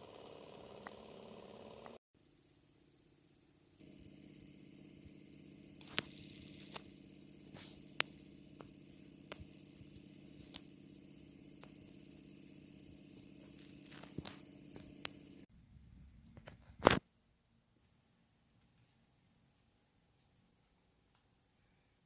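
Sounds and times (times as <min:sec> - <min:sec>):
thin high whine: 0:00.0 - 0:15.5.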